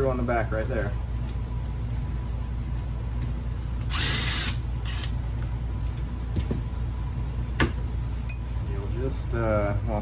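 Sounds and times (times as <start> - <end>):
power screwdriver running: 3.8 - 5.1.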